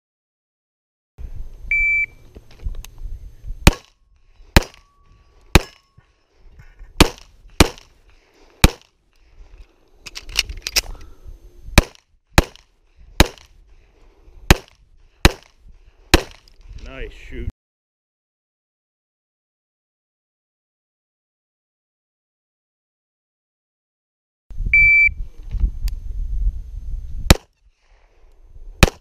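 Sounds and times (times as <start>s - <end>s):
shot timer beep: 1.7s - 2.2s, 24.8s - 25.2s
pistol shots: 3.6s - 3.9s, 4.6s - 4.8s, 5.5s - 5.8s, 7.0s - 7.9s, 8.6s - 8.9s, 11.8s - 12.6s, 13.2s - 13.5s, 14.5s - 15.5s.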